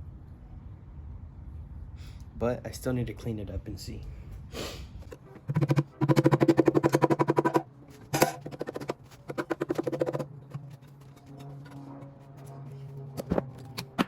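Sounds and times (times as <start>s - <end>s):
impact wrench rattling: 5.4s - 10.8s.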